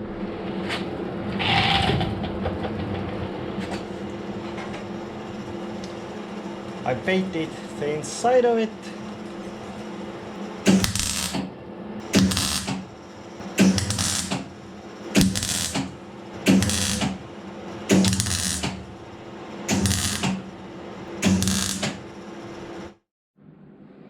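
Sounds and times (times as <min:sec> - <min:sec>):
electrical hum: 0:08.7 - 0:22.9
welding crackle bursts: 0:10.7 - 0:11.5, 0:12.2 - 0:13.0, 0:13.6 - 0:14.6, 0:15.2 - 0:17.2, 0:17.9 - 0:18.9, 0:19.7 - 0:20.5, 0:21.2 - 0:22.0.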